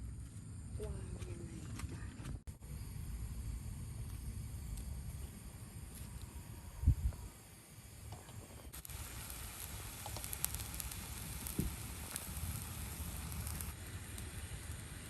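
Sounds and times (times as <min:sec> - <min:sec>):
food sizzling over fire: 0:04.6 - 0:15.0
sharp pops: 0:08.7 - 0:14.3.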